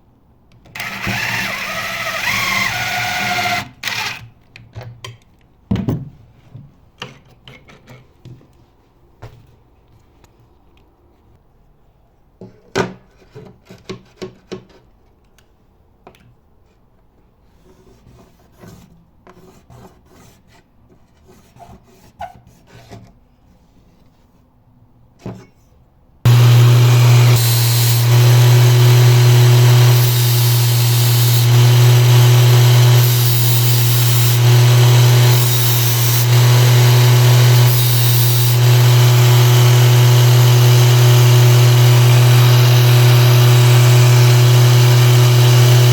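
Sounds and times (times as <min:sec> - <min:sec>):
grinder humming and grinding: 0:00.8 - 0:04.2, 0:26.3 - 0:45.9.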